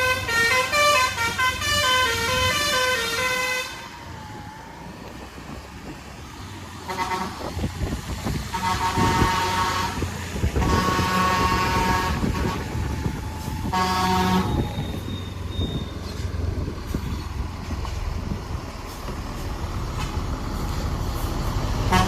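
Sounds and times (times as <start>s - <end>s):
musical air horn blasts: 0.0s - 4.0s, 6.9s - 7.5s, 8.5s - 12.9s, 13.6s - 14.9s
bus engine rumble: 0.0s - 22.0s.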